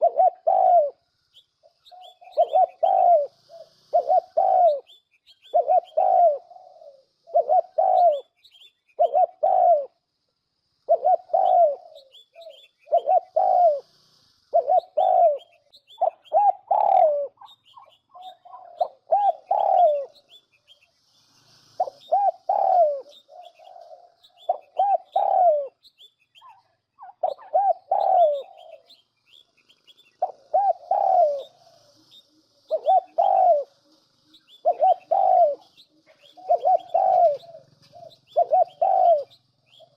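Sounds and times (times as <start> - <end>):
dove cooing: 0.0 - 10.1, 10.8 - 20.4, 21.6 - 29.0, 29.9 - 39.9
small birds chirping: 0.0 - 39.9.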